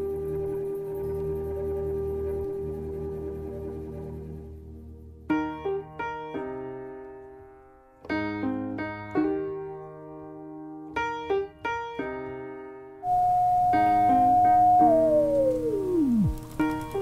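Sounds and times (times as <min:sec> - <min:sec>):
piano notes ringing: 0:13.0 - 0:17.0.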